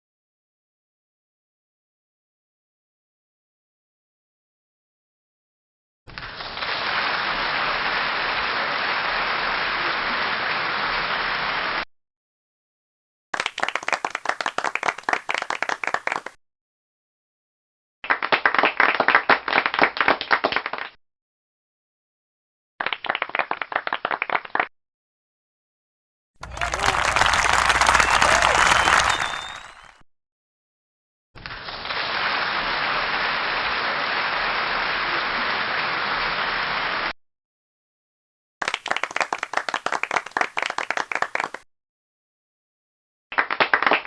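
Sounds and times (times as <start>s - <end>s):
applause: 6.1s - 11.9s, 13.4s - 16.4s, 18.0s - 21.0s, 22.8s - 24.7s, 26.4s - 30.0s, 31.4s - 37.2s, 38.6s - 41.7s, 43.3s - 44.0s
sparse clapping: 26.4s - 30.0s.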